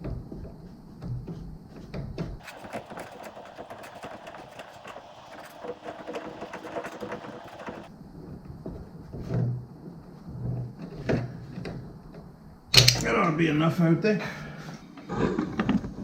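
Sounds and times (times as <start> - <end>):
knocks: 2.4 - 7.9
metallic clicks and scraping: 2.4 - 7.9.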